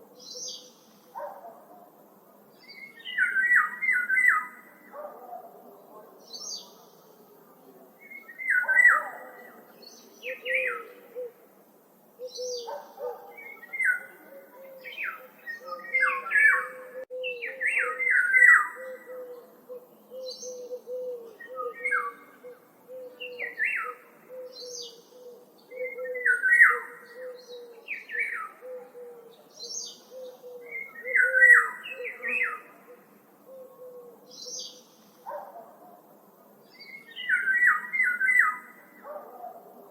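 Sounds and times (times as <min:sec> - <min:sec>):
woodland birds calling: 0:08.0 - 0:11.5, 0:12.2 - 0:35.7.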